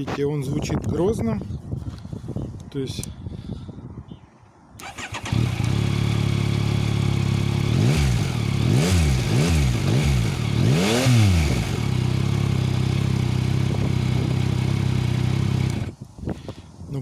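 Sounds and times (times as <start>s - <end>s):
motorcycle engine idling and revving: 4.8s - 16.0s.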